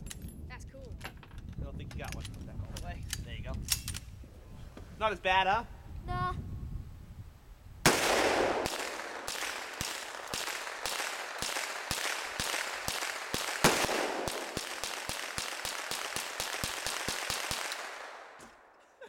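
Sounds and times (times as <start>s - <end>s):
rifle shots echoing: 7.8s - 18.7s.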